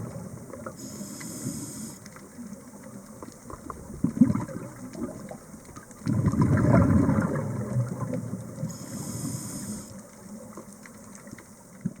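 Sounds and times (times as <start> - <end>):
bubbles underwater: 3.5 - 8.7.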